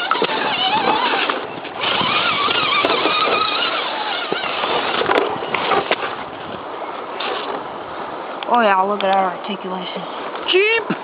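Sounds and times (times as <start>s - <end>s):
toy car motor whining: 0.0s - 5.1s
creek water flowing: 0.0s - 11.0s.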